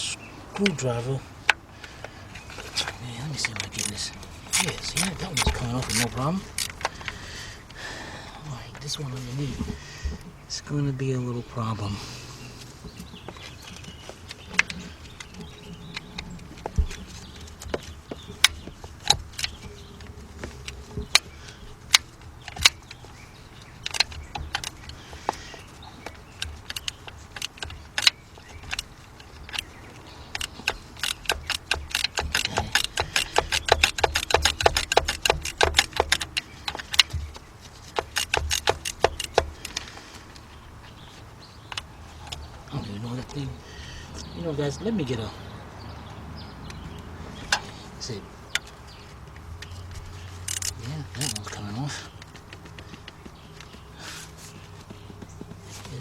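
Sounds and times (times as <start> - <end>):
ratchet clicking: 3.5 - 6.9, 23.8 - 25.0, 26.0 - 29.7, 30.3 - 39.8, 50.3 - 51.6.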